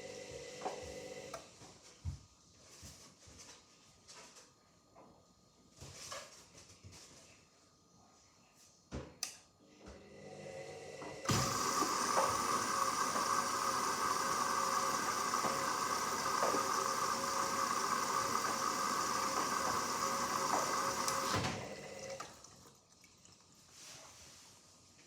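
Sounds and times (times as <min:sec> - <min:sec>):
water rushing into washing machine: 0:10.2 - 0:23.7.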